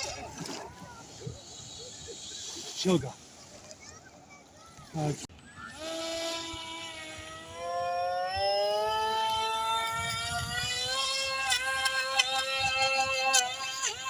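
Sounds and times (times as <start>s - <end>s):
model boat motor whining: 5.3s - 14.0s.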